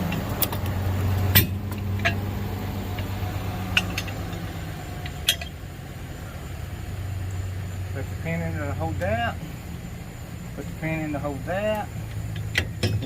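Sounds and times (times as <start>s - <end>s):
steady low hum: 0.0s - 13.0s
metal clinks and knocks: 1.3s - 2.3s, 2.9s - 5.6s, 12.1s - 13.0s.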